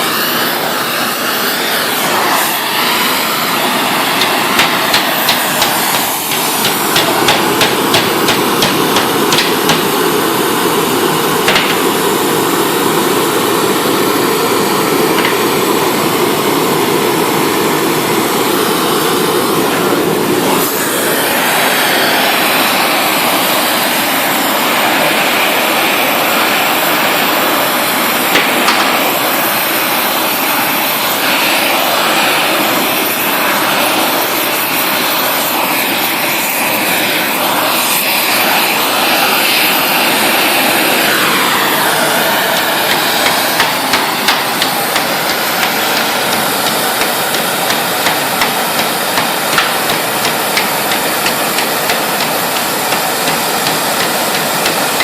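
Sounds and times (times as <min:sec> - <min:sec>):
hammer striking hot steel: 0:00.0 - 0:12.2, 0:15.1 - 0:16.1, 0:20.6 - 0:55.0
gas torch roaring: 0:00.0 - 0:55.0.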